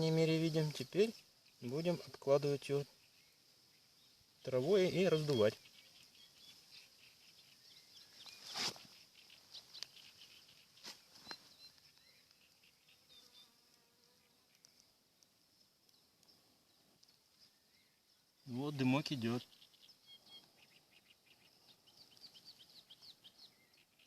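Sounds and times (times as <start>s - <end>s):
dry grass rustling: 3.0s - 13.0s.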